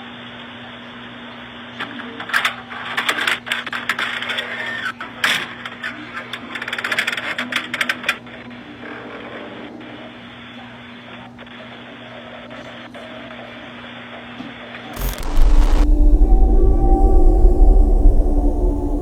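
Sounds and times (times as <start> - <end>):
indistinct voices: 15.0 - 19.0.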